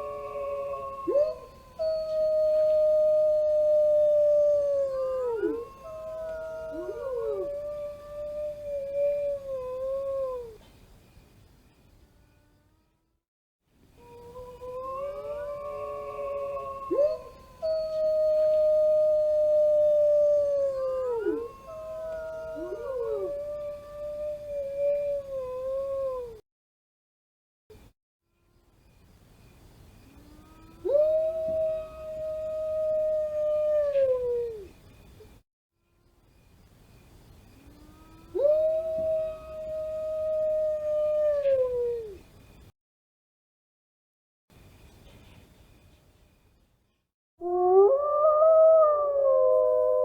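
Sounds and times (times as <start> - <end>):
wolves howling in chorus: 0.0 - 9.2, 14.1 - 24.5.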